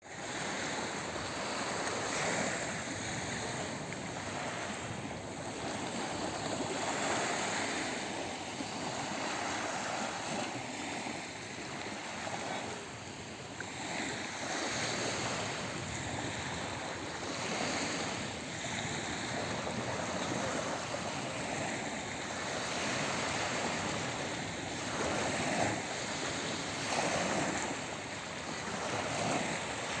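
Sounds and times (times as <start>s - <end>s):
surf washing ashore: 0.0s - 30.0s.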